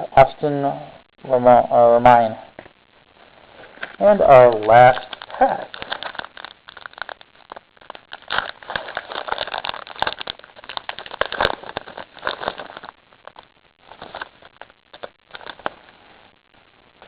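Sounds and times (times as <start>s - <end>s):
card pack wrapper crinkling: 3.6s - 15.9s.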